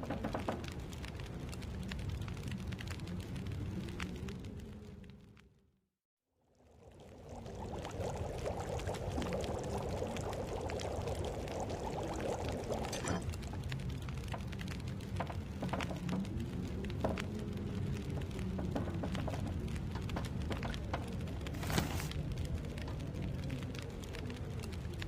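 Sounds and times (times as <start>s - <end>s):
stew bubbling in a pot: 6.4s - 25.0s.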